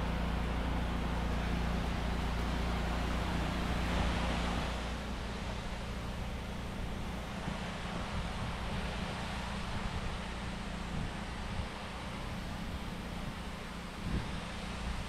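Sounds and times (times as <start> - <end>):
pressure washer engine running: 0.0 - 15.0.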